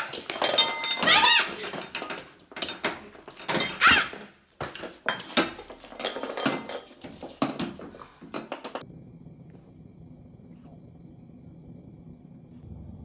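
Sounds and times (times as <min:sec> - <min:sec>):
dishes clattering and clinking: 0:00.0 - 0:08.8.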